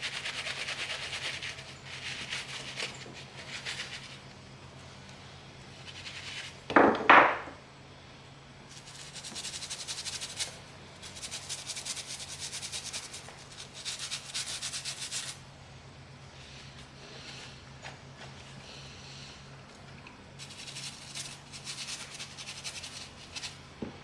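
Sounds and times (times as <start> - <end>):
rubbing on leather glove: 0.0 - 4.2, 8.7 - 15.4, 20.4 - 23.6.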